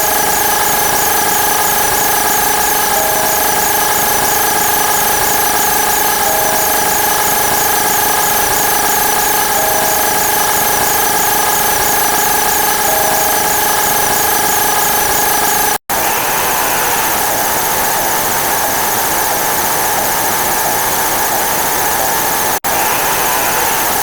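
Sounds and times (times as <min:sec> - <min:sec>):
fast repeating chirp: 0:00.0 - 0:15.8
high whining tones: 0:00.0 - 0:24.0.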